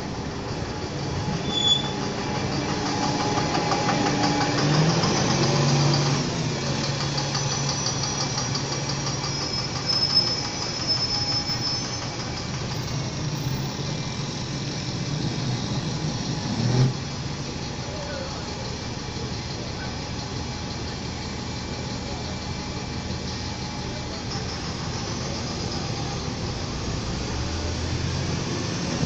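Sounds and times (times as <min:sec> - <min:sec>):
vehicle engine hum and rumble: 0:00.0 - 0:29.0.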